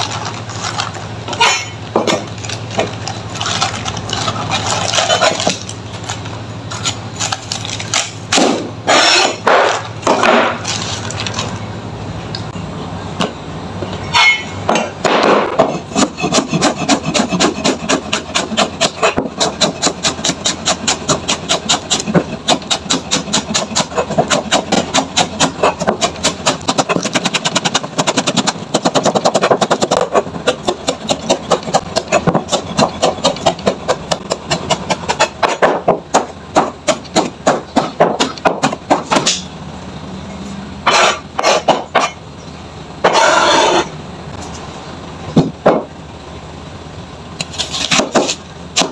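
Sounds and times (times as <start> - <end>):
knife chopping on wooden board: 15.1 - 39.4.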